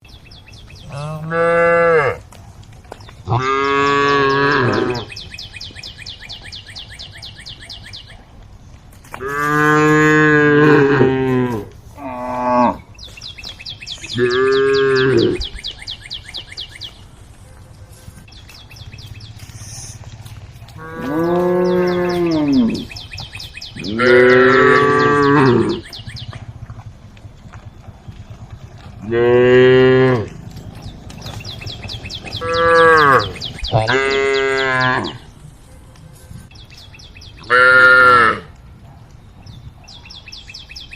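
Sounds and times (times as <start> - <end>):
cows mooing: 0.8 - 2.3, 3.2 - 5.2, 9.2 - 12.9, 14.0 - 15.6, 20.7 - 26.9, 28.1 - 35.3, 37.4 - 38.5.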